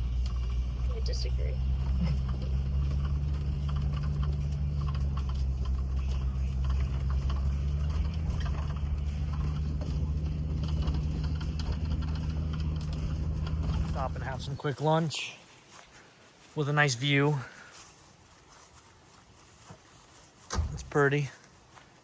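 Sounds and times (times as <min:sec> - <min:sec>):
low engine drone: 0:00.0 - 0:14.6
vehicle body knocking and rattling: 0:00.0 - 0:14.6.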